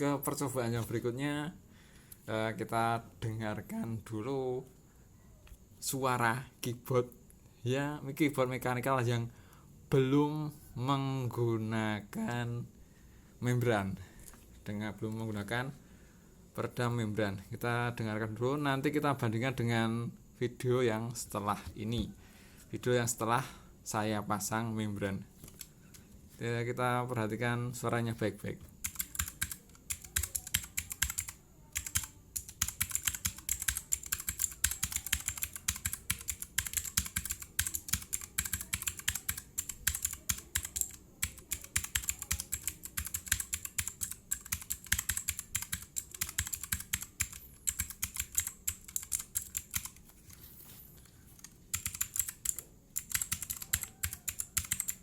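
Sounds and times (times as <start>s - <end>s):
mechanical keyboard key clicks: 28.8s - 50.0s, 51.4s - 55.0s.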